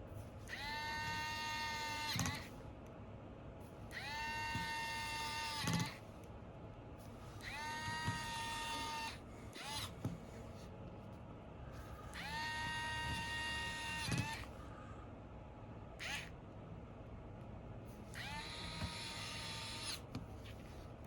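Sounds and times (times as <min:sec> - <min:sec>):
electric screwdriver whining: 0:00.5 - 0:02.5, 0:03.9 - 0:06.0, 0:07.4 - 0:10.0, 0:12.1 - 0:14.5, 0:16.0 - 0:16.3, 0:18.1 - 0:20.1.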